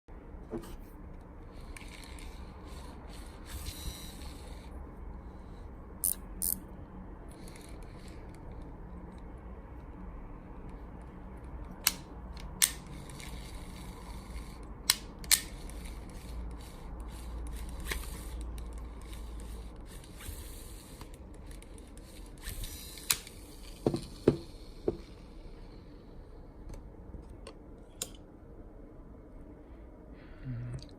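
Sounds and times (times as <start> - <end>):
sharp reel clicks: 1.5 - 4.8, 6.0 - 6.6, 11.8 - 24.6
fishing reel gears whirring: 1.5 - 6.6, 7.3 - 8.6, 12.8 - 14.7, 15.4 - 23.8.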